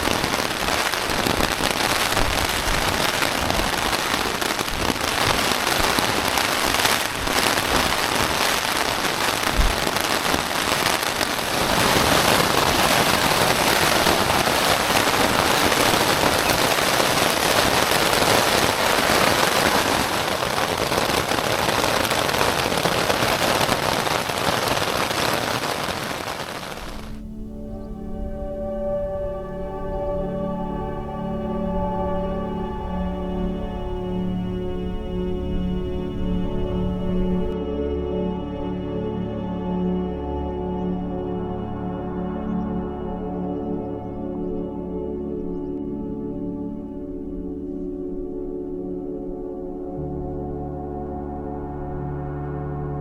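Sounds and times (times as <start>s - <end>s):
heavy rain on a tent: 0.0s - 27.2s, 35.9s - 37.6s.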